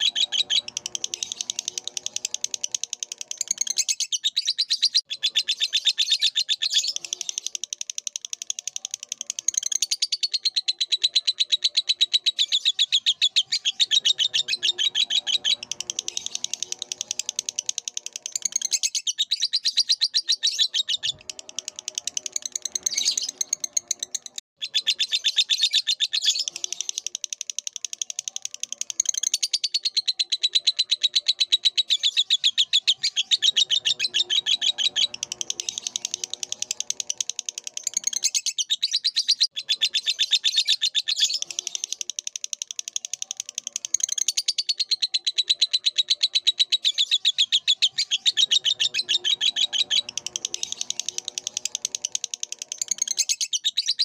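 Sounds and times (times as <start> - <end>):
lovebird trilling: 28.2 - 54.0.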